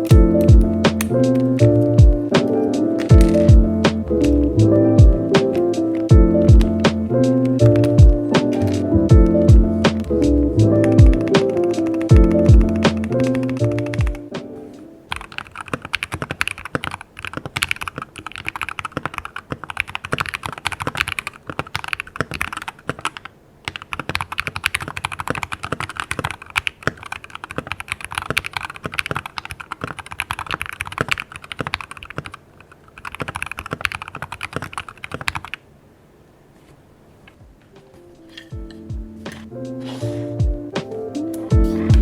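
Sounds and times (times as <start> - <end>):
mechanical keyboard typing: 0.0 - 4.0, 5.0 - 10.2, 10.8 - 14.3, 15.1 - 35.6.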